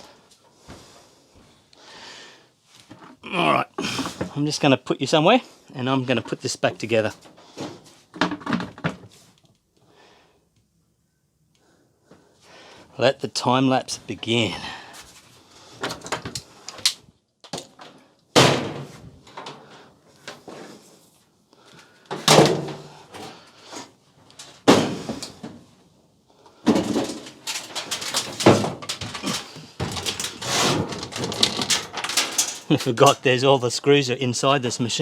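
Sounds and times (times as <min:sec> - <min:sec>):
sheet-metal panels clattering: 0:22.1 - 0:23.3, 0:26.7 - 0:33.2.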